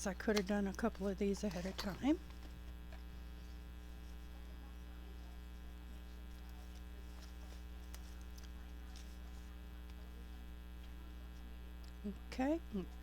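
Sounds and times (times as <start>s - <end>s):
electrical mains hum: 0.0s - 13.0s.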